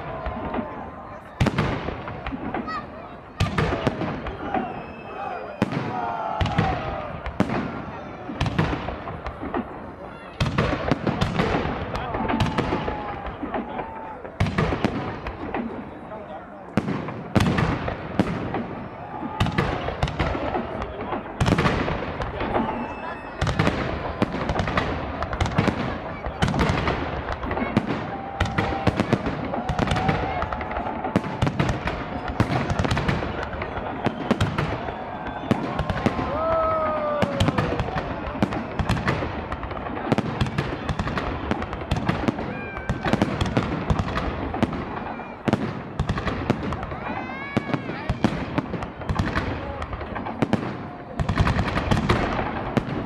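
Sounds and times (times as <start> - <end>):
small firework pops: 16.7 - 53.0
firework crackling: 16.8 - 53.0.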